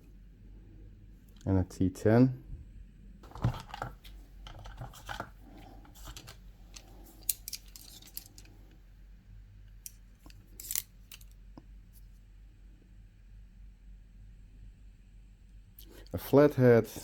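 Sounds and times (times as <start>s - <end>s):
small plastic clicks and rattles: 3.3s - 8.6s, 9.8s - 11.4s.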